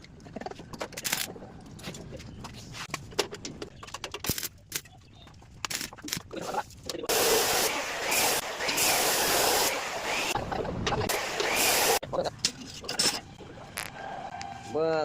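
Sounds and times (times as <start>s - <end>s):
arc welding sizzle: 11.1s - 12.0s
metal clinks and knocks: 12.4s - 13.4s.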